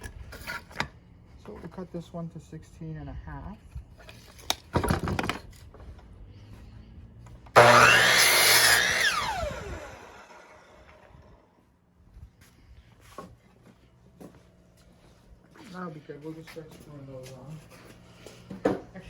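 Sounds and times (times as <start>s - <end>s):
saw blade winding down: 7.5s - 11.1s
electric saw cutting wood: 7.5s - 11.3s.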